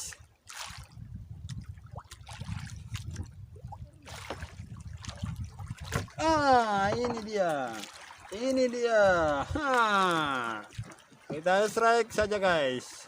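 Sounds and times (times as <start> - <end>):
water trickling and splashing: 0.0 - 13.0
short knocks and clicks: 6.8 - 7.4.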